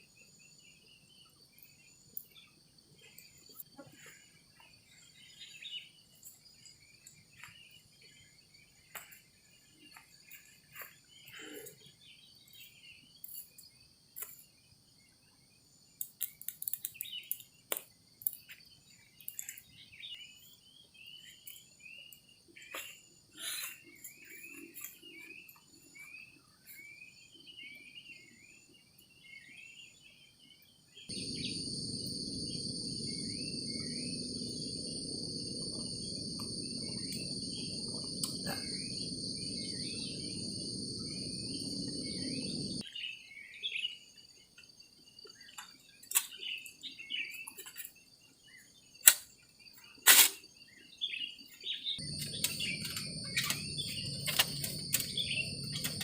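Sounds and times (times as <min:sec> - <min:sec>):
low rushing noise: 0:31.1 - 0:42.8
short chirping calls: 0:31.1 - 0:42.8
insects trilling: 0:31.1 - 0:43.1, 0:51.6 - 0:56.0.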